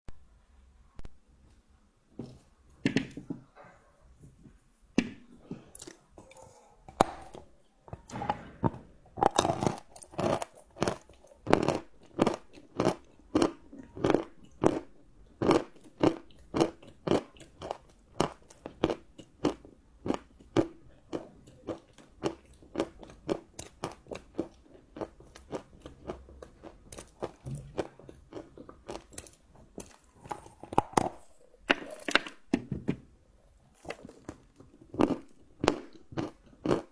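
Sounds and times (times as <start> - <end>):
crunchy chocolate chewing: 9.2 - 32.6, 33.7 - 36.9.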